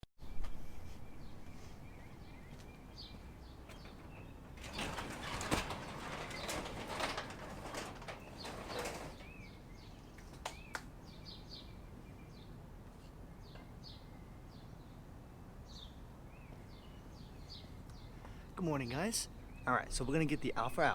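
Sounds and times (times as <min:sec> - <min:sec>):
small birds chirping: 0:00.3 - 0:20.9
loud rustling: 0:03.0 - 0:09.5.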